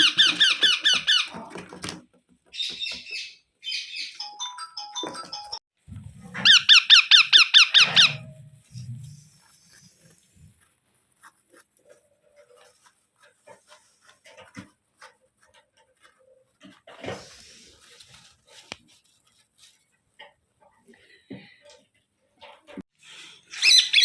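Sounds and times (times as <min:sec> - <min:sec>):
parakeet squeaky calls: 0:00.0 - 0:01.3, 0:06.4 - 0:08.2, 0:23.6 - 0:24.0
faint clicks and rustles: 0:08.5 - 0:22.8.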